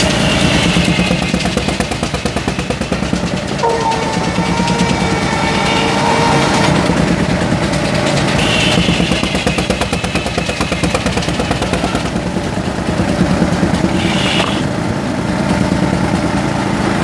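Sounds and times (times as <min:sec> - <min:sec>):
sawmill engine running: 0:00.0 - 0:17.0
high whine: 0:03.3 - 0:09.8.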